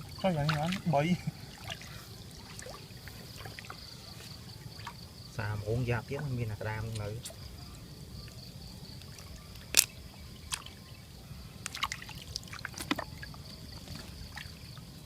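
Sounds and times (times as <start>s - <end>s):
water splashing and dripping: 0.0s - 5.1s, 9.0s - 10.9s, 11.6s - 14.9s
high insect drone: 0.0s - 15.0s.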